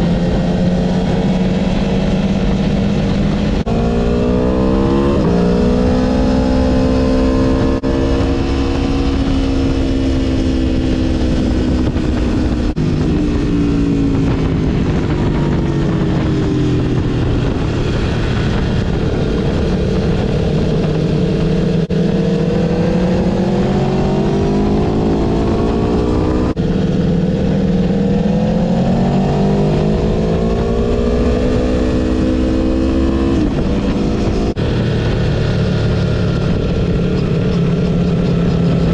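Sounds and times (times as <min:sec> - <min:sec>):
motorcycle engine accelerating: 0:00.0 - 0:38.9
wind noise: 0:00.0 - 0:38.9.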